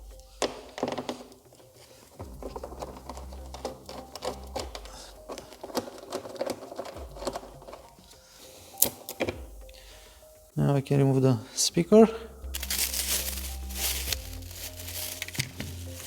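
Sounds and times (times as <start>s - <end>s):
tool and metal clicks: 0.4s - 8.2s.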